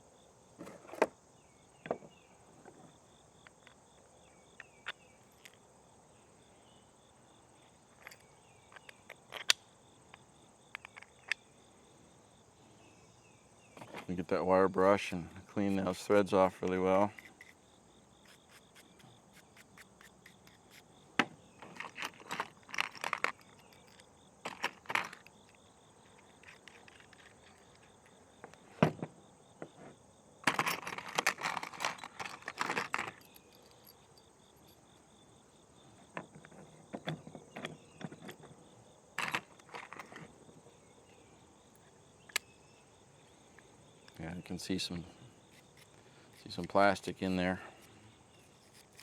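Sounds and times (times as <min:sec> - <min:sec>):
wire brush scrubbing bolt threads: 0:45.5 - 0:47.4, 0:48.3 - 0:49.0.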